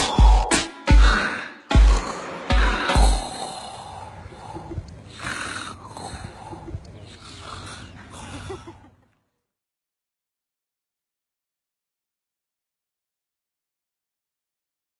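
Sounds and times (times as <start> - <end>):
man snoring: 0.0 - 7.9.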